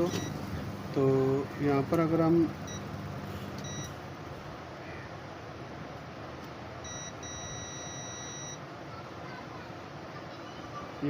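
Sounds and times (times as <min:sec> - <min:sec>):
multimeter continuity beeps: 0:00.0 - 0:00.4, 0:02.6 - 0:03.0, 0:03.6 - 0:04.0, 0:06.8 - 0:08.6.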